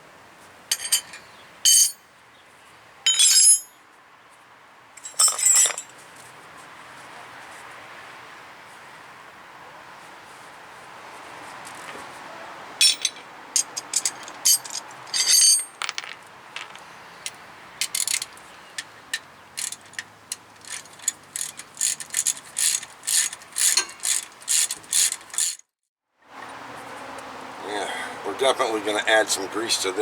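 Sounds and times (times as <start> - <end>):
ratchet wrench clicking: 19.6 - 25.6.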